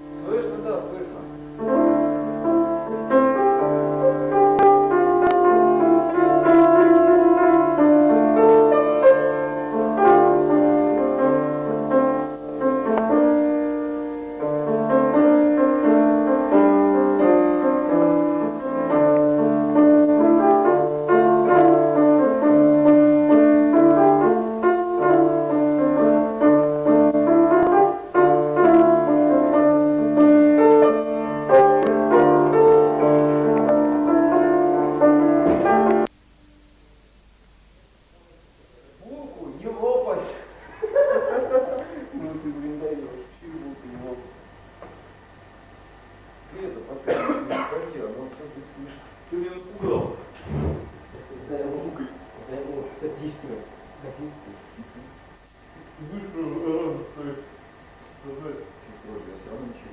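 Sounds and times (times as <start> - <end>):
slow keyboard piece: 0.0 - 36.9.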